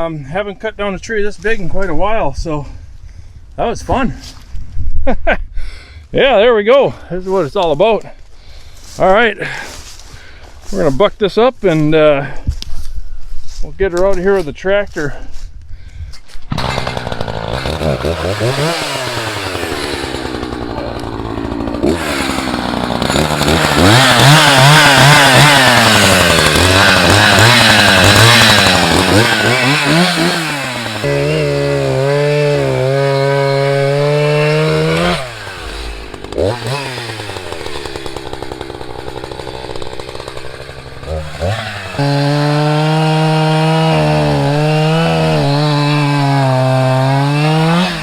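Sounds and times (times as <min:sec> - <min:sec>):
chainsaw revving: 0:16.5 - 0:48.0.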